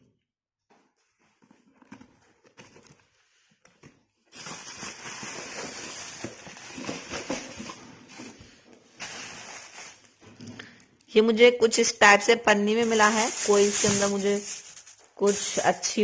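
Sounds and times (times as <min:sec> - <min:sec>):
packaging clicks and rustles: 0:01.3 - 0:10.2, 0:12.8 - 0:15.8
plastic bag crinkling: 0:04.3 - 0:10.2, 0:12.7 - 0:16.0.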